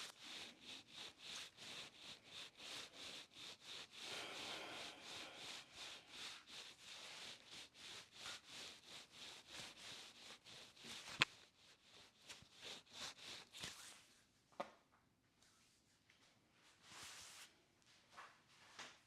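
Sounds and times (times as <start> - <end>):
hands rubbing in massage strokes: 0.0 - 14.1, 16.8 - 17.5.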